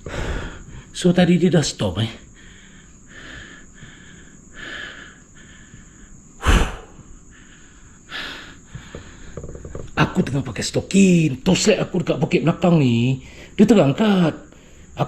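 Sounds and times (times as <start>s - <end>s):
man breathing heavily: 0.0s - 1.0s, 2.2s - 9.7s, 13.2s - 13.6s
faint high whine: 0.0s - 15.0s
sharp puff of breath: 6.4s - 7.0s.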